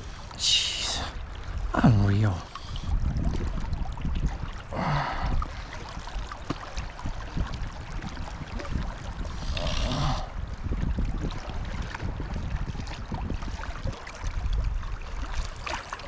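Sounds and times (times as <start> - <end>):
river water rushing: 0.0 - 2.7.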